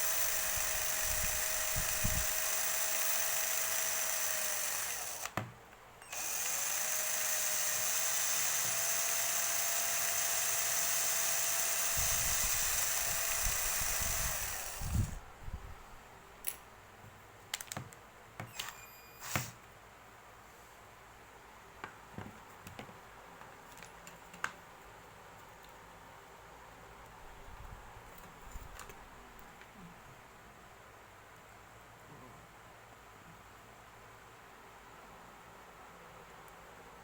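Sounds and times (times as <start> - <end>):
mini drill whirring: 0.0 - 5.4, 6.0 - 15.2, 18.4 - 19.6.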